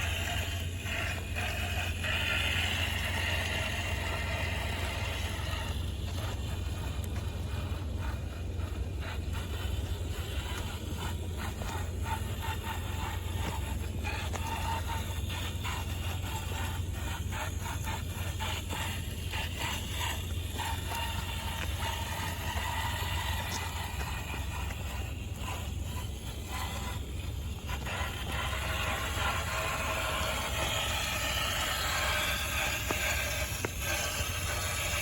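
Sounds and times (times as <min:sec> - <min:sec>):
faint motor whine: 0:00.0 - 0:35.0
low rumble: 0:00.0 - 0:35.0
tyres scraping on stone: 0:00.0 - 0:35.0.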